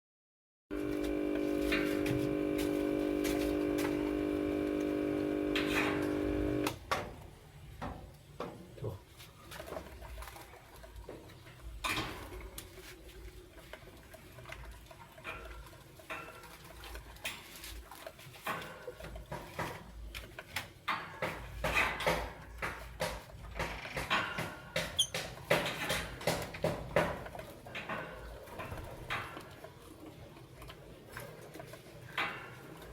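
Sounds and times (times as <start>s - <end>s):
small clicks and scratches: 0.7s - 6.8s.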